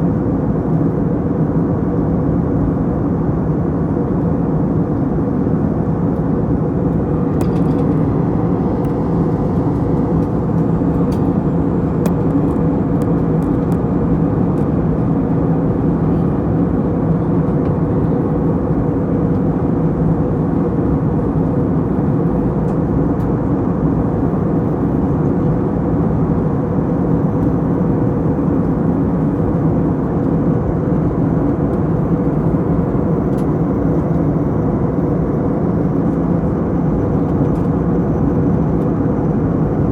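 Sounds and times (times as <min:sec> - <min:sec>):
airliner cabin roar: 0:00.1 - 0:39.9
low hum: 0:06.4 - 0:13.8.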